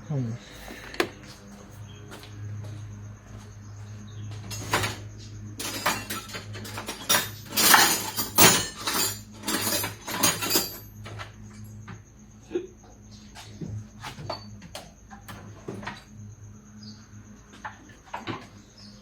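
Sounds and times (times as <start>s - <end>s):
metal tools clinking: 4.4s - 5.0s, 5.6s - 11.0s.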